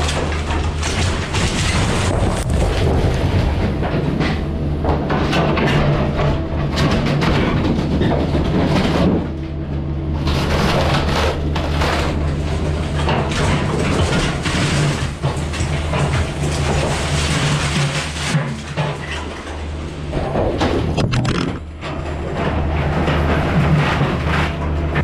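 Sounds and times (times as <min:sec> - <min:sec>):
wall crunching and debris falling: 0:00.0 - 0:04.4, 0:11.8 - 0:21.7
excavator diesel engine running: 0:00.0 - 0:25.0.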